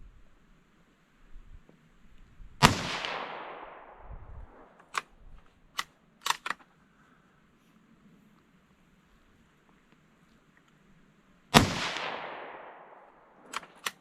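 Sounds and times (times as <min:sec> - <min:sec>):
rifle shot with echo: 0:02.6 - 0:05.2, 0:11.6 - 0:14.0
rifle bolt clicks: 0:04.8 - 0:06.7, 0:12.0 - 0:14.0.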